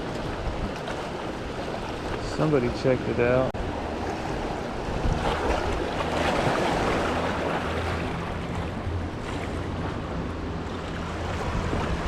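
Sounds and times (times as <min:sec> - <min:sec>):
rushing water: 0:00.0 - 0:12.0
wind buffeting microphone: 0:00.0 - 0:12.0.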